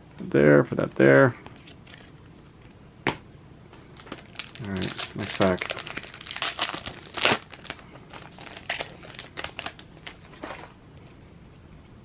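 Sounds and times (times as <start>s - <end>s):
plastic wrapper tearing and crinkling: 4.0s - 10.8s.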